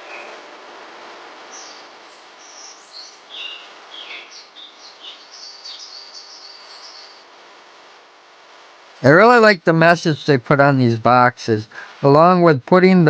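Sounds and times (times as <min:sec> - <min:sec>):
steady hiss: 0:00.0 - 0:13.0
birds chirping: 0:01.5 - 0:07.3.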